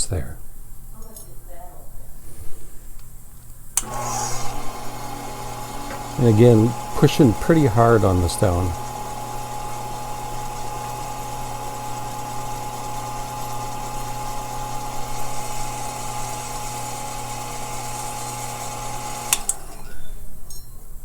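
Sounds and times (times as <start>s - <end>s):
faceting machine motor humming: 3.8s - 19.8s.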